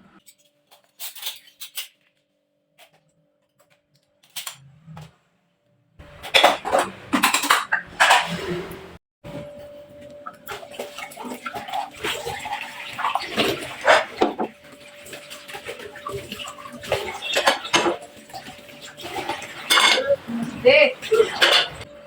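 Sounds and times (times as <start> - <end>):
dishes and utensils clinking: 6.1 - 8.4, 10.2 - 21.9
water running: 10.0 - 21.9.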